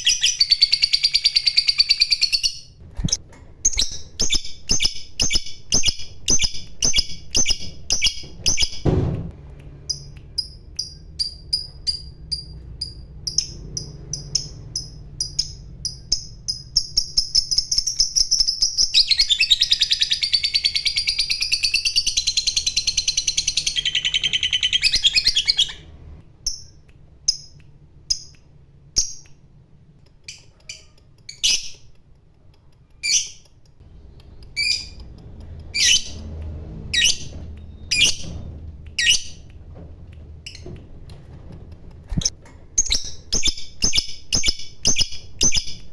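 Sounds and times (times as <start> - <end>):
lovebird chirping and trilling: 0.0 - 8.8, 9.9 - 28.3, 30.2 - 31.9, 33.0 - 33.5, 34.4 - 35.1, 35.7 - 36.3, 36.9 - 38.4, 39.0 - 39.5, 42.1 - 45.9.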